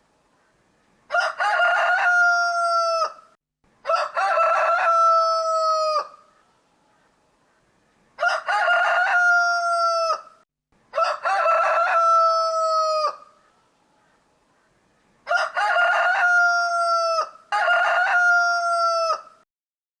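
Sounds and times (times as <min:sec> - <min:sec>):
rooster crowing: 0:01.1 - 0:06.3, 0:08.2 - 0:13.4, 0:15.3 - 0:19.4.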